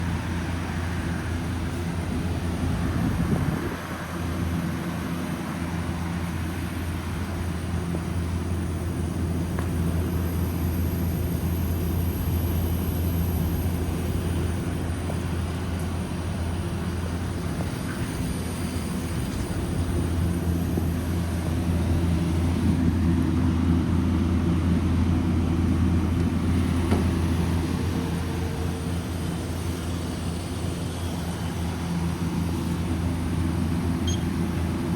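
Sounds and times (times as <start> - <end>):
chiller machine hum: 0.0 - 34.9.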